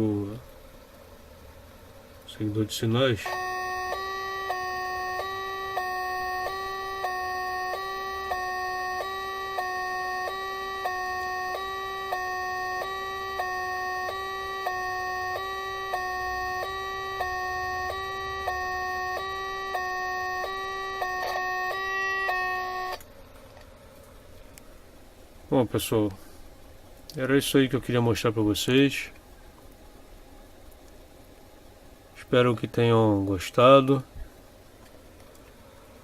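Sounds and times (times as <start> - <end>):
electronic two-tone siren: 3.2 - 23.0.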